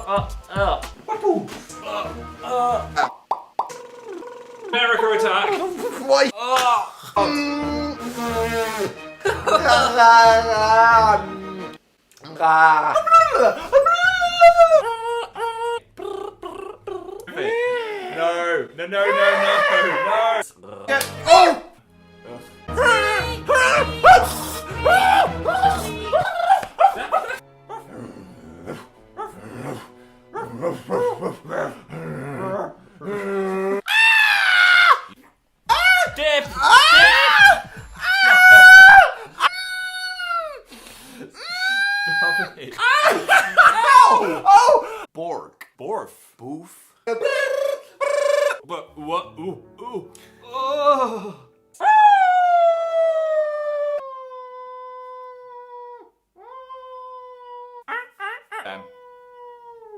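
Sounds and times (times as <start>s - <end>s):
man holding a vocal note: 7.2s - 9.0s, 47.2s - 51.5s
man howling like a dog: 12.4s - 18.0s, 19.0s - 20.4s, 22.7s - 27.9s, 35.7s - 40.6s, 41.5s - 45.0s, 49.4s - 59.9s
person making dog-like yips: 47.1s - 48.6s.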